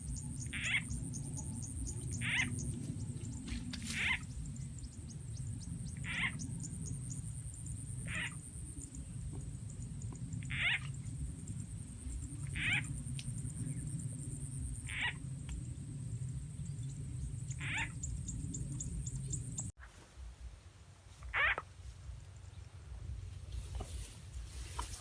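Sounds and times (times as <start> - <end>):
low rumble: 0.0 - 19.8
frog call: 0.1 - 2.8, 3.8 - 4.3, 5.9 - 6.8, 7.8 - 8.9, 10.1 - 11.0, 12.4 - 13.0, 14.7 - 15.2, 17.5 - 18.2, 21.3 - 21.6.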